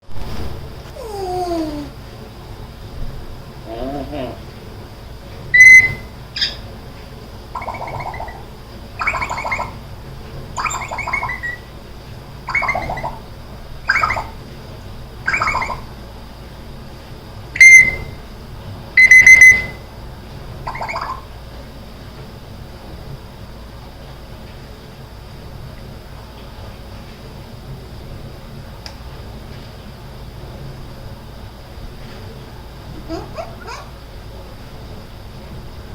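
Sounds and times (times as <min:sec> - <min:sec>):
parrot calling: 0:00.9 - 0:02.0, 0:03.6 - 0:04.6, 0:05.5 - 0:06.7, 0:07.6 - 0:09.9, 0:10.6 - 0:11.8, 0:12.5 - 0:13.3, 0:13.9 - 0:14.5, 0:15.2 - 0:16.0, 0:17.6 - 0:18.2, 0:19.0 - 0:19.8, 0:20.6 - 0:21.3, 0:32.9 - 0:34.0.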